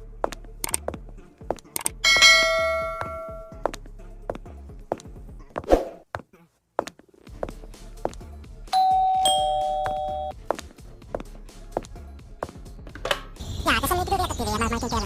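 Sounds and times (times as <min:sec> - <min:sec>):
background music with low beat: 0:00.0 - 0:05.7, 0:07.2 - 0:15.0
clicks: 0:00.6 - 0:00.8, 0:01.7 - 0:02.0
two-note ding-dong chime: 0:02.0 - 0:03.6, 0:08.8 - 0:10.3.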